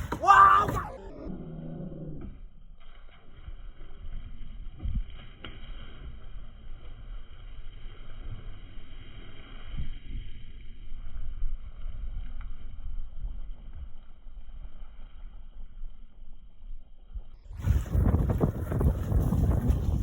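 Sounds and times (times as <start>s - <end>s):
wind buffeting microphone: 17.6s - 20.0s.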